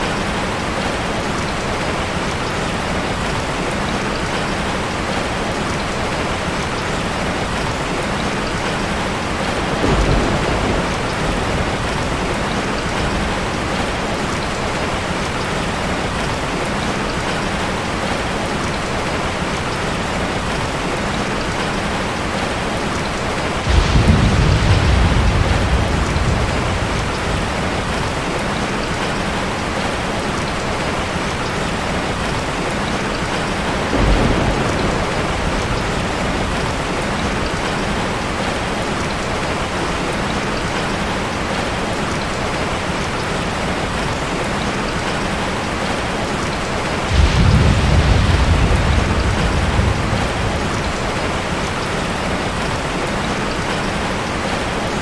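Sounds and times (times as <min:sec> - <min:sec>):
heavy rain falling: 0:00.0 - 0:55.0
thunder rumbling: 0:07.2 - 0:16.6, 0:23.5 - 0:30.0, 0:31.7 - 0:39.2, 0:46.4 - 0:52.8.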